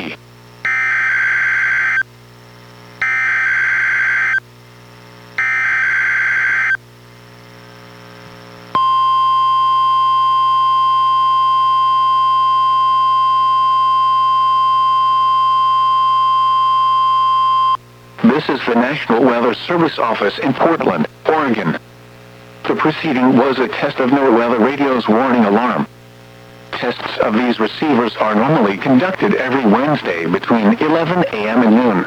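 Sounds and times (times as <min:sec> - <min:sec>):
steady high alarm tone: 0:00.7 - 0:02.0, 0:03.0 - 0:04.4, 0:05.4 - 0:06.8, 0:08.8 - 0:17.8.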